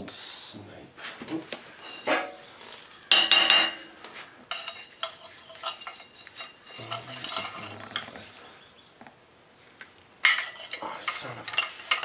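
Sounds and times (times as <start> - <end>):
metal hand tools clattering: 4.5 - 8.2, 10.2 - 12.0.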